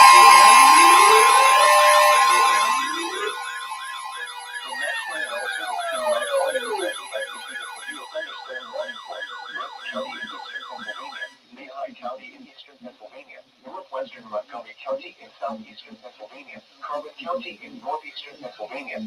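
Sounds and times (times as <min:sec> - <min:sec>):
electronic sirens yelping: 0:00.0 - 0:11.4
siren sliding down in pitch: 0:00.0 - 0:11.4.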